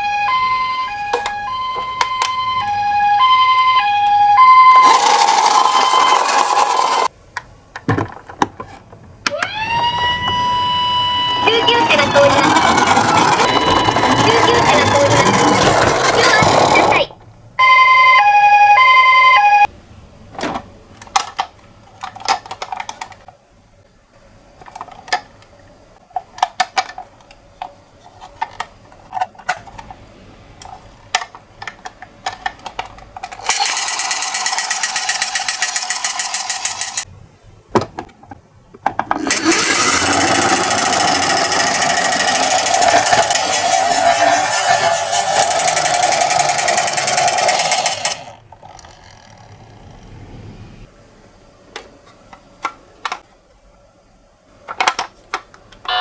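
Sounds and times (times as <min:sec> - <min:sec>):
toy two-tone siren: 0:00.0 - 0:07.1, 0:09.3 - 0:15.6, 0:17.6 - 0:19.7, 0:39.3 - 0:48.2
toy rattling as it rolls: 0:33.3 - 0:37.1, 0:39.2 - 0:49.5.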